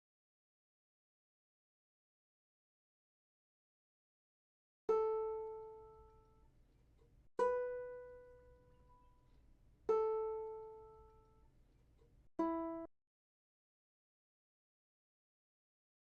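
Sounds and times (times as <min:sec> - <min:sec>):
ukulele single notes: 0:04.9 - 0:06.3, 0:07.4 - 0:09.1, 0:09.9 - 0:11.3, 0:12.4 - 0:12.9.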